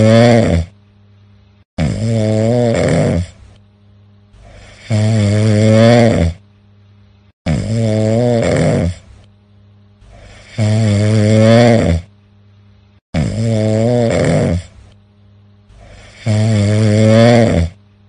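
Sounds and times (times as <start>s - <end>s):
person snoring loudly: 0.0s - 0.8s, 1.8s - 3.5s, 4.4s - 6.4s, 7.4s - 9.2s, 10.0s - 12.1s, 13.1s - 14.8s, 15.7s - 17.8s
quiet breathing: 3.1s - 7.4s, 8.8s - 13.0s, 14.4s - 17.9s.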